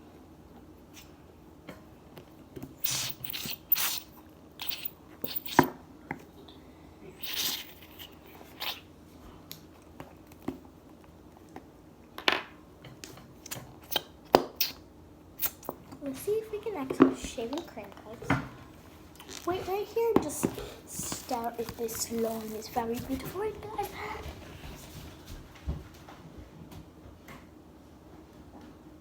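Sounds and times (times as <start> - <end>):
squishy sticky slime noises: 7.1 - 10.6, 19.1 - 24.2.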